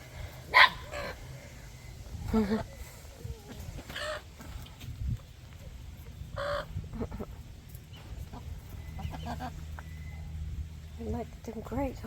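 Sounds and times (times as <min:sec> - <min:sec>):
hens clucking: 0:06.0 - 0:10.4.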